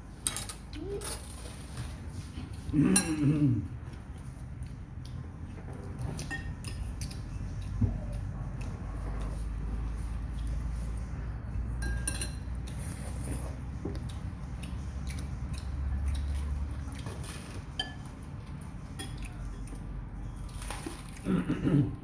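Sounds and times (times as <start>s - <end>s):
cutlery clinking against plates: 0.2s - 1.7s, 2.8s - 3.4s, 5.6s - 8.7s, 11.8s - 13.5s, 15.1s - 19.8s.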